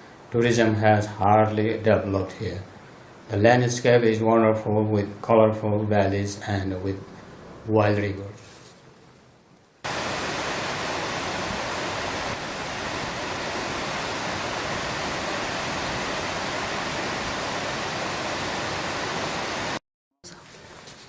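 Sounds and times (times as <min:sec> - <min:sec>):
rushing river water: 0:09.8 - 0:19.8.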